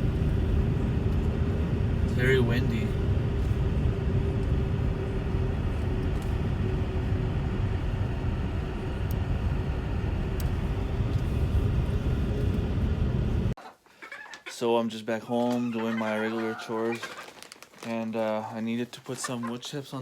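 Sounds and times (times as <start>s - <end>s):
storm wind buffeting microphone: 0.0s - 13.6s.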